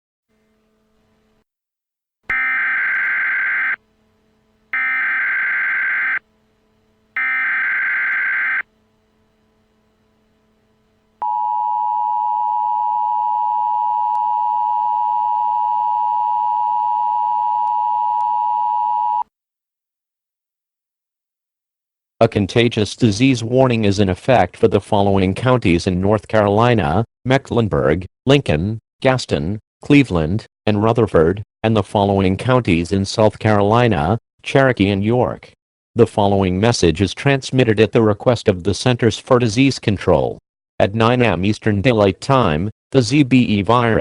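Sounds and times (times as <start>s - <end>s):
two-tone attention signal: 2.3s - 3.8s, 4.8s - 6.2s, 7.2s - 8.6s
warbling data tones: 2.3s - 3.8s, 4.8s - 6.2s, 7.2s - 8.6s.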